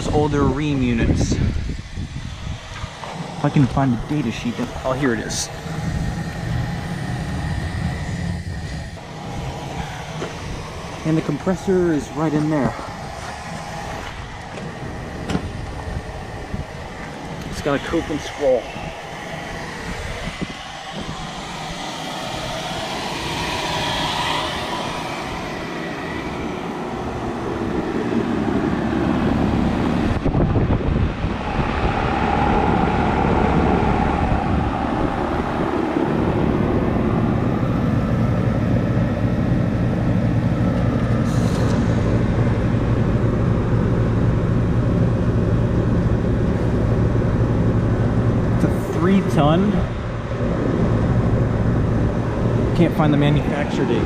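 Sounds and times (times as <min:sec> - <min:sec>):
fan rush: 0:00.0 - 0:54.0
low compressor hum: 0:00.0 - 0:54.0.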